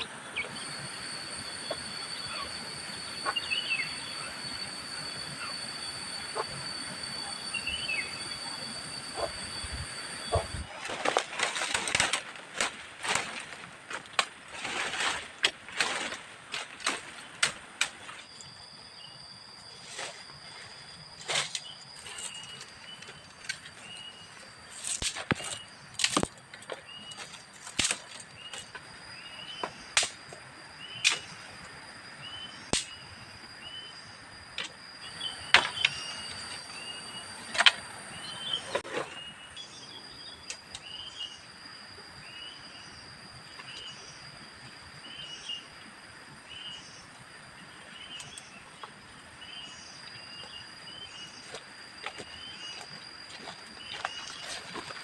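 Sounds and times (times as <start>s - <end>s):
bird chirping: 0.0s - 10.7s, 35.0s - 41.5s
high-pitched insect drone: 0.0s - 55.0s.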